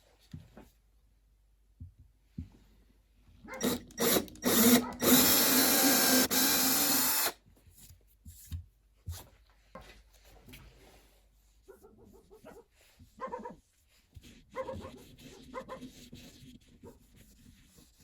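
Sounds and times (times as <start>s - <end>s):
small power tool running: 3.6s - 7.4s.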